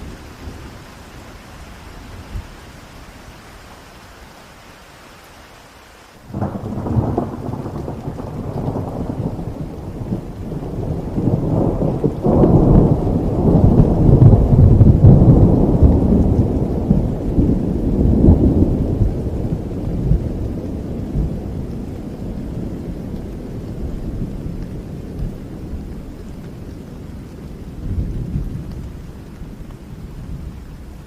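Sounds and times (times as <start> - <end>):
heavy rain: 0.0 - 31.0
thunder rumbling: 6.3 - 31.0.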